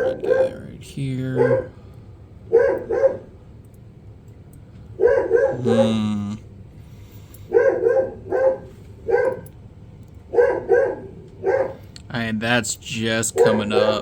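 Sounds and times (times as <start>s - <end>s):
dog barking: 0.0s - 0.6s, 1.2s - 1.8s, 2.5s - 3.4s, 5.0s - 6.1s, 7.5s - 9.5s, 10.3s - 11.8s, 13.3s - 14.0s.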